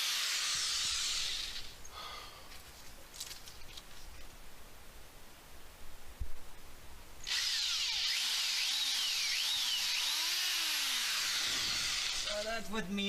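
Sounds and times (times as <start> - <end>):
power drill running: 0.0 - 1.7, 7.2 - 12.5.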